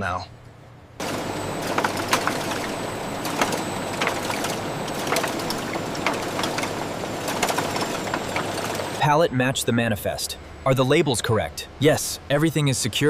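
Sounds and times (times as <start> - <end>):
sharp clicks and clanks: 1.0 - 9.0
factory machinery running: 1.0 - 13.0.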